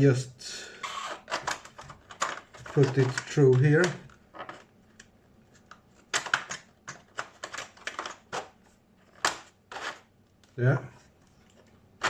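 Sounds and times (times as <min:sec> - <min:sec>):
wire clicking and scraping in foam: 0:00.9 - 0:08.4.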